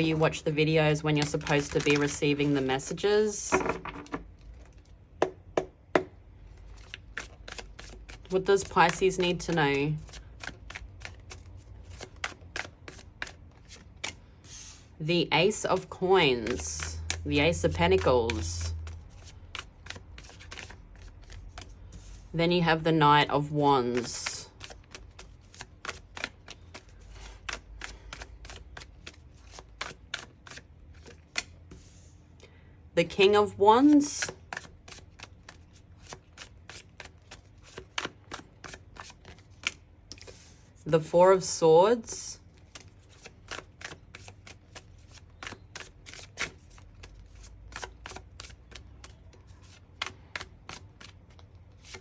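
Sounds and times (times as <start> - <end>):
cards being shuffled: 0.9 - 5.0, 6.5 - 14.9, 15.5 - 22.3, 23.9 - 32.1, 33.9 - 40.8, 42.5 - 52.0
cards flicking and tapping: 1.1 - 2.6, 3.5 - 4.3, 5.2 - 14.2, 23.9 - 31.6.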